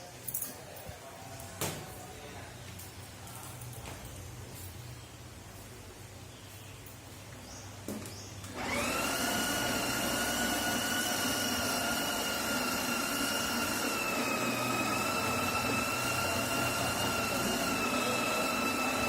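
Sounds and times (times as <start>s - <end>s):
coffee grinder motor whine: 8.5s - 19.0s.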